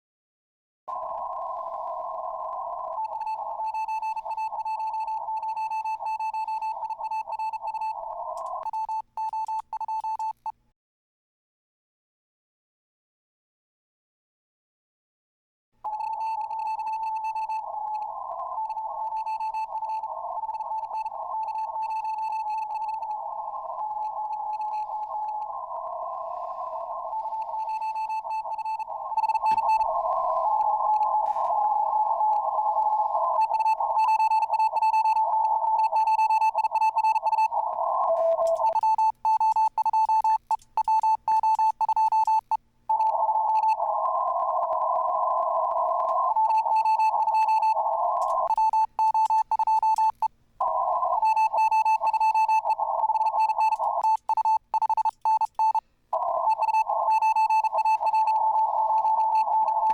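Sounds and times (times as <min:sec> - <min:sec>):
morse code tone: 0:15.9 - 0:59.9
radio receiver hiss: 0:16.4 - 0:39.0, 0:43.0 - 0:48.8, 0:55.2 - 0:59.9.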